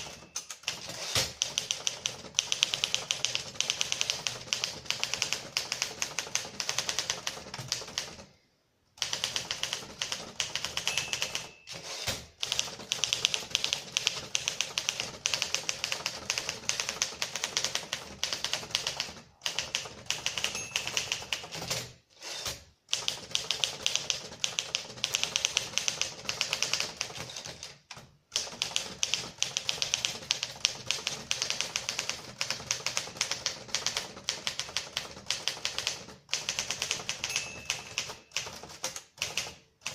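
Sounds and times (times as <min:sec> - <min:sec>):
manual typewriter key strikes: 0:09.0 - 0:19.0, 0:19.6 - 0:39.9.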